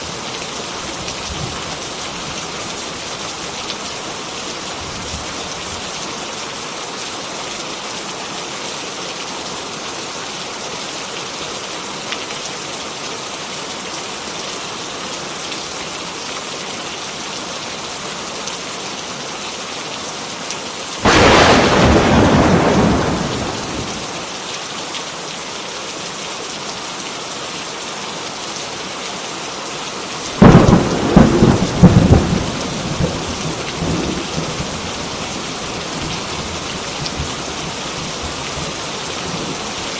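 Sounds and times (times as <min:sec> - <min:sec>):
heavy rain: 0:00.0 - 0:39.9
thunder claps: 0:21.0 - 0:24.3.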